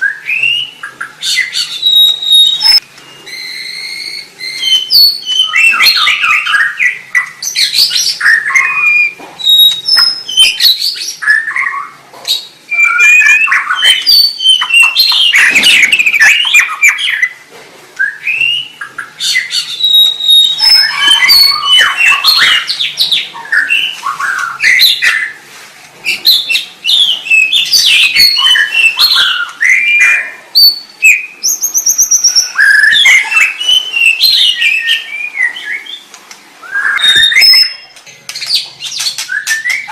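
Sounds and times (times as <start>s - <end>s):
songbird singing whistles: 0.0s - 17.4s, 18.0s - 25.4s, 26.0s - 39.9s
rapid high bird trill: 12.7s - 17.4s, 18.6s - 25.4s.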